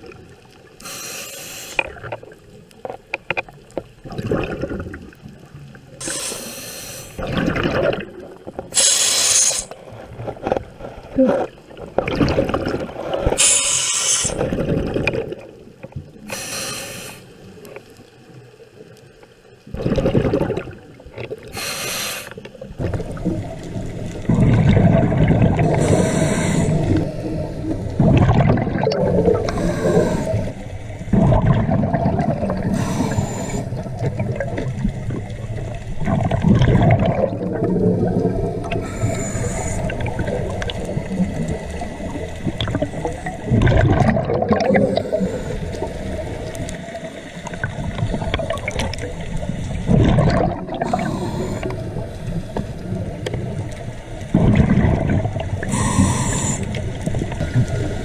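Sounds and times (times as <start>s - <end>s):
exhaled bubbles gurgling: 0.0s - 1.1s, 1.7s - 18.9s, 19.6s - 58.0s
regulator hissing inhalations: 0.8s - 1.8s, 6.0s - 7.2s, 8.7s - 9.8s, 13.4s - 14.4s, 16.3s - 17.4s, 21.5s - 22.4s, 25.7s - 27.8s, 29.4s - 30.7s, 32.7s - 33.8s, 38.8s - 39.9s, 44.9s - 46.1s, 50.8s - 52.6s, 55.6s - 56.8s.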